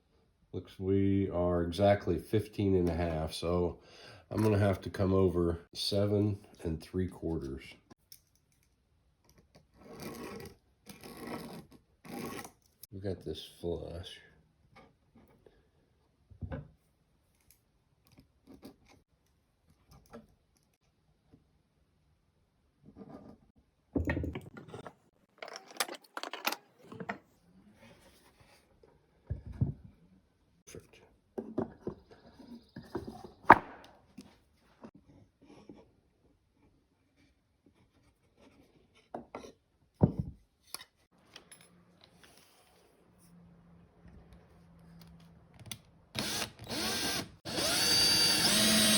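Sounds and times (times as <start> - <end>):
wood pieces and tools knocking: 23.9 - 27.2.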